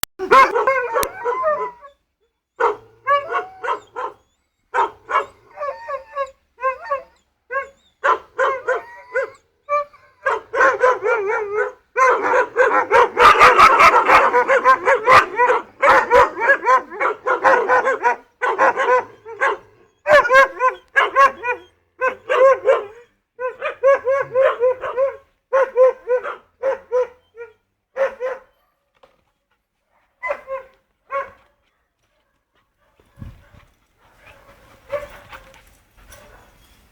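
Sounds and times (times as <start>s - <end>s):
dogs barking: 0.2s - 1.7s, 2.6s - 5.4s, 8.0s - 9.4s, 10.2s - 27.2s, 28.0s - 28.5s, 30.2s - 31.4s, 32.8s - 36.5s.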